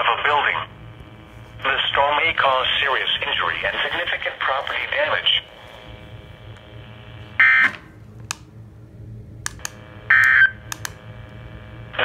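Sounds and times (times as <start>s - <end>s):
faint steady hum: 0.0s - 12.0s
sharp clicks: 9.4s - 11.0s
buzzing digital data tones: 9.8s - 12.0s.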